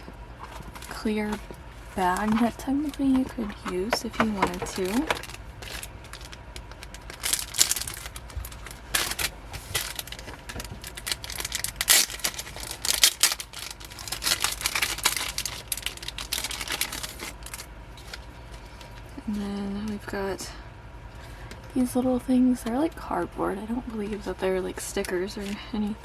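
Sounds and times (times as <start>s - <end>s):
plastic bag crinkling: 0.4s - 19.0s.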